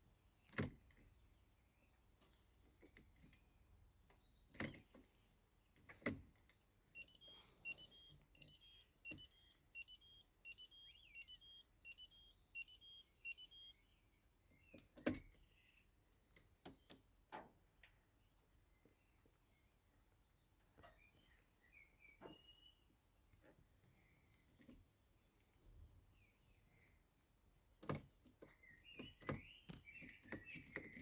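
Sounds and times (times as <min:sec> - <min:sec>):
sharp clicks: 0:07.0 - 0:13.7
electronic warning beeps: 0:07.0 - 0:13.8.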